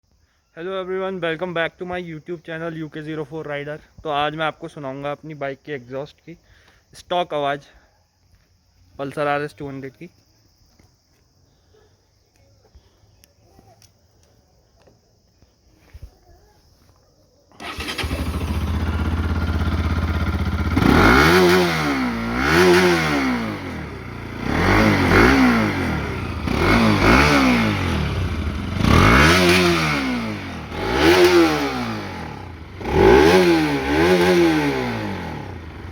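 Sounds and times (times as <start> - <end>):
motorcycle engine starting: 17.5 - 35.9
motorcycle engine idling and revving: 17.6 - 35.9.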